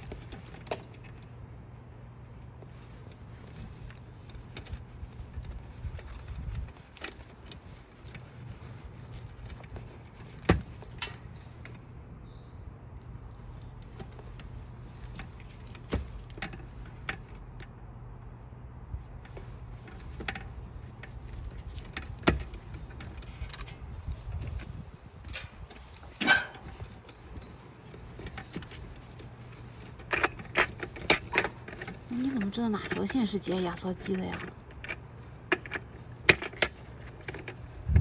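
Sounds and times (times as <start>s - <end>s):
tools and metal parts clicking: 25.2s - 37.8s.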